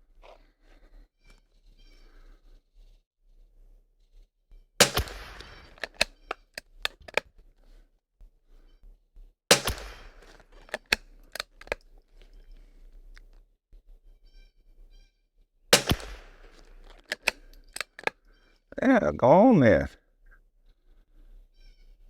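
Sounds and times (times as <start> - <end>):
rifle shots: 4.8 - 6.0, 9.5 - 11.0, 15.8 - 17.4.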